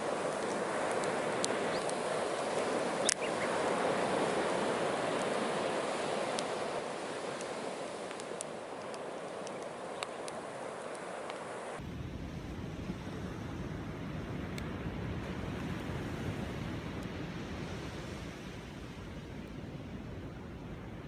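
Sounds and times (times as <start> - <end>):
bonfire crackling and popping: 0.0 - 11.8
steady rushing noise: 0.0 - 21.0.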